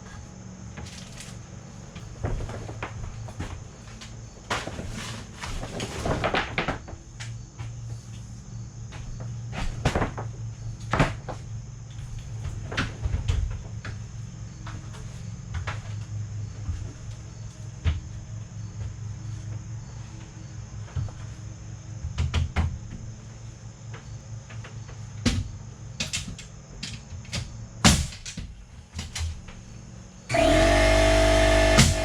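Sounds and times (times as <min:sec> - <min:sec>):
wooden knocks and clatter: 0:02.0 - 0:08.0, 0:08.9 - 0:11.5, 0:12.2 - 0:17.2, 0:22.0 - 0:23.2, 0:23.9 - 0:29.7
steady low hum: 0:06.9 - 0:32.0.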